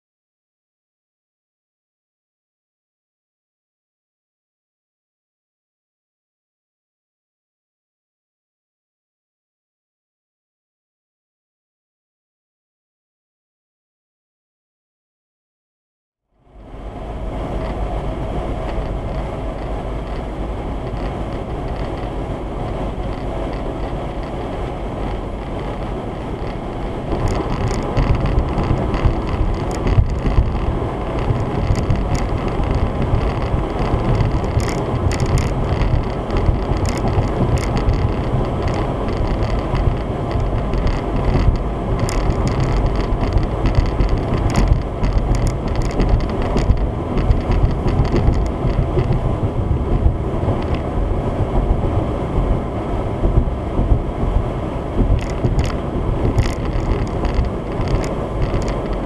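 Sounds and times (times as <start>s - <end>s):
car road and engine noise: 16.3s - 59.0s
faint clicks: 55.0s - 59.0s.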